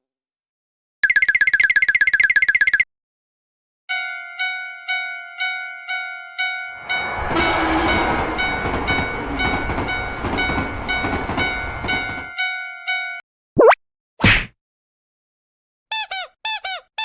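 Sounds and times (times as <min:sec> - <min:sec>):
railroad crossing bell ringing: 0:03.9 - 0:13.2
train rushing past: 0:06.8 - 0:12.3.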